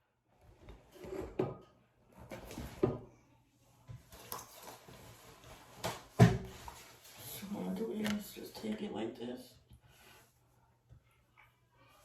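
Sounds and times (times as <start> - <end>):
makeup products handled: 5.9 - 8.9.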